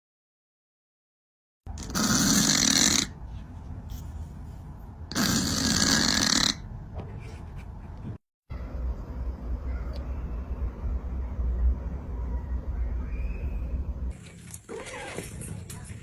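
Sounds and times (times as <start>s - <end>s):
cat snoring: 1.8s - 3.2s, 5.1s - 6.6s.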